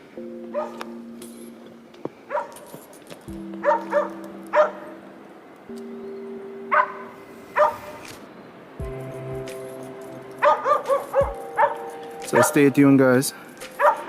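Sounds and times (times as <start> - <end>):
music with low held notes: 0.1 - 2.2, 3.3 - 7.2, 8.8 - 14.0
dog barking: 0.5 - 0.8, 2.3 - 2.6, 3.6 - 4.9, 6.7 - 8.0, 10.4 - 12.6, 13.8 - 14.0.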